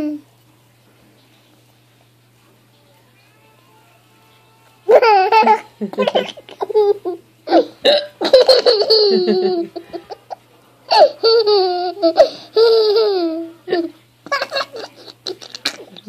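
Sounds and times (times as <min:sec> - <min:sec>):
toddler laughing: 0:04.9 - 0:10.3, 0:10.9 - 0:16.0
woman hiccuping: 0:07.8 - 0:08.1.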